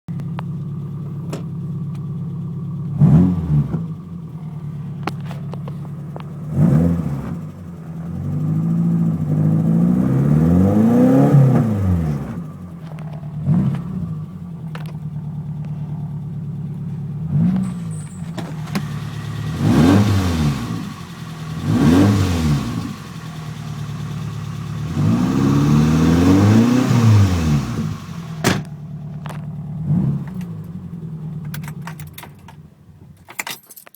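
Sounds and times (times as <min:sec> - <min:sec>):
car engine idling and revving: 0:00.1 - 0:33.5.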